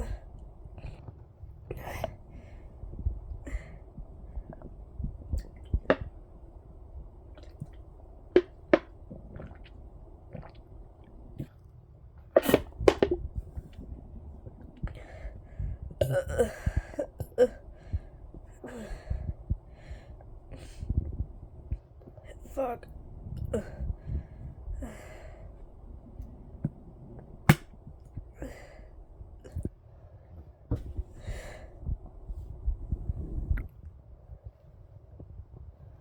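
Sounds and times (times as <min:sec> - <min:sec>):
low stomach rumble: 0:00.0 - 0:29.8, 0:30.4 - 0:36.0
throaty gurgle: 0:07.3 - 0:11.5
sharp smacks and clicks: 0:27.5 - 0:27.8.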